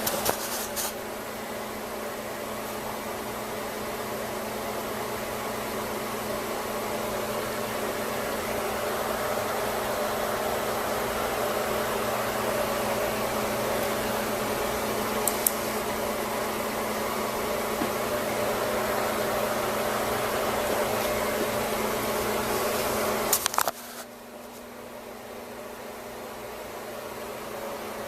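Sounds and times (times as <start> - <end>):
machine hum and hiss: 0.0 - 28.0.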